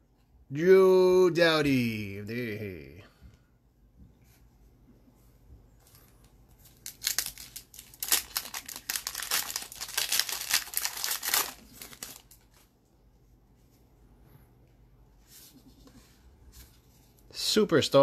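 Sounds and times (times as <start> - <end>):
plastic wrapper tearing and crumpling: 6.5 - 12.6.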